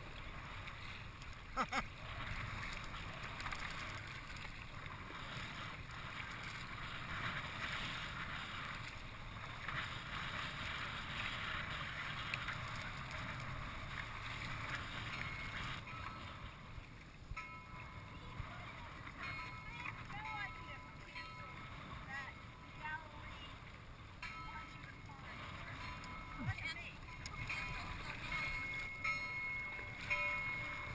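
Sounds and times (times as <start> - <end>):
water splashing around a kayak: 0.0 - 30.9.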